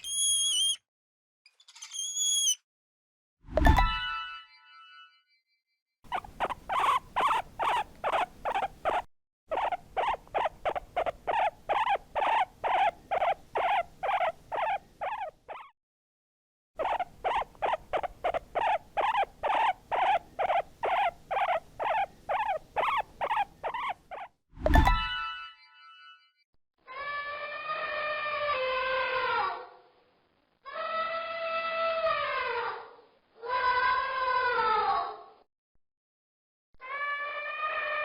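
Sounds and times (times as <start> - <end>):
animal squeaking rapidly: 0.0 - 0.8, 1.8 - 2.6, 6.1 - 15.7, 16.8 - 24.4.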